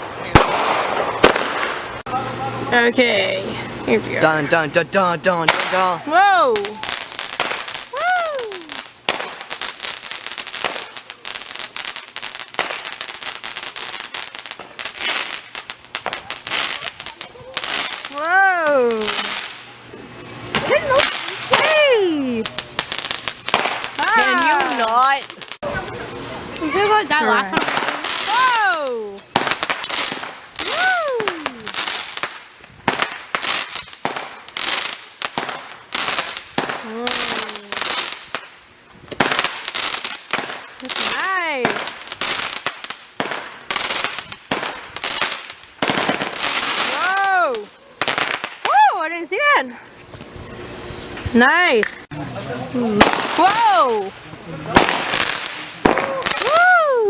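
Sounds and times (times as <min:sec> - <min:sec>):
fireworks pops: 0:00.0 - 0:02.1
fireworks bangs: 0:00.0 - 0:02.9, 0:04.2 - 0:48.8, 0:49.4 - 0:56.8
fireworks crackling: 0:00.0 - 0:57.0
person cheering: 0:07.9 - 0:08.8, 0:24.0 - 0:25.1, 0:30.6 - 0:31.8, 0:55.9 - 0:57.0.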